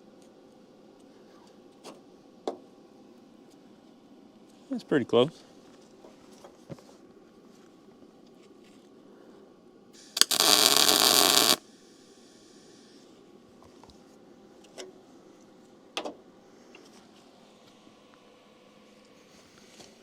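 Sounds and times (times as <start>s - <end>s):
welding arc crackling: 10.0s - 11.6s.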